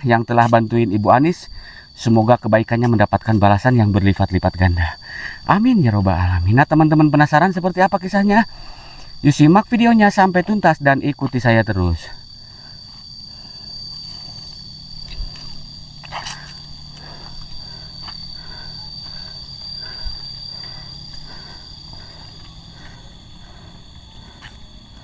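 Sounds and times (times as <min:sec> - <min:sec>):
high-pitched insect drone: 0:00.0 - 0:25.0.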